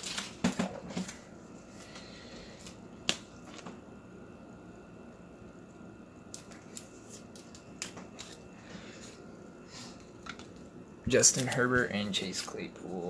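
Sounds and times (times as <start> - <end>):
cards rustling: 0.0 - 2.0, 6.3 - 9.2, 9.9 - 13.0.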